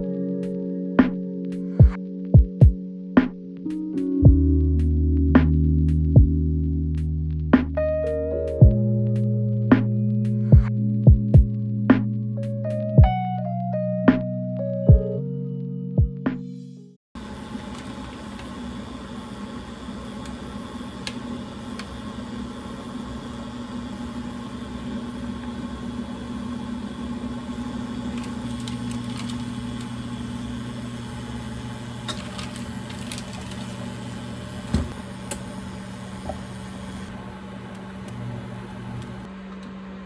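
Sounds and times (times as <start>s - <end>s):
machine humming: 17.2s - 40.0s.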